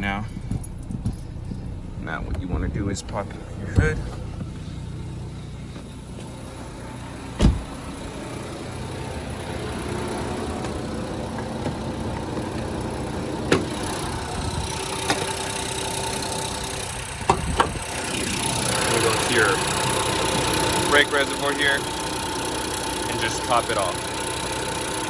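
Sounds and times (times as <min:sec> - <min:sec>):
car engine idling: 0:00.0 - 0:25.0
thump: 0:07.4 - 0:07.8.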